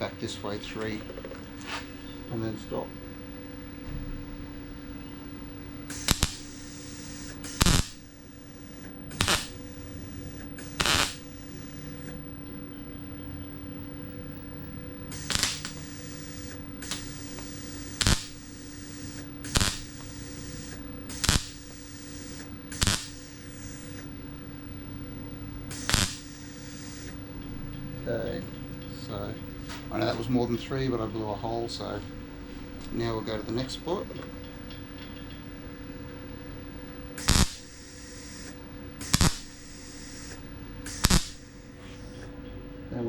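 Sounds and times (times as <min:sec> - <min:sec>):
steady welder hum: 0:00.0 - 0:43.0
welder sizzling bursts: 0:05.8 - 0:12.2, 0:15.1 - 0:24.6, 0:25.6 - 0:27.2, 0:37.1 - 0:42.3.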